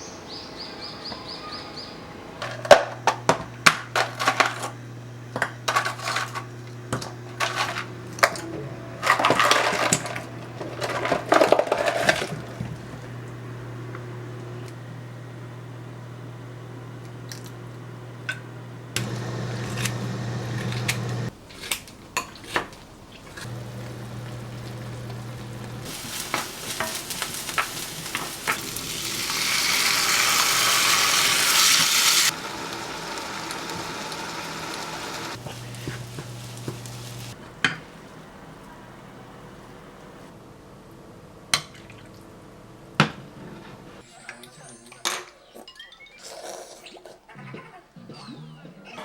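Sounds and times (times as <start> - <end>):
food sizzling in a pan: 23.3 - 37.4.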